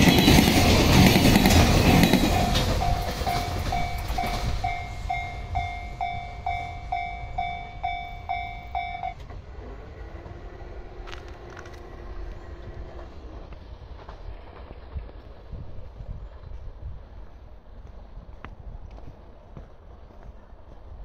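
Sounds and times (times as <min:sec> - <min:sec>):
train rumble: 0:00.0 - 0:21.0
level crossing warning bell: 0:01.8 - 0:09.3.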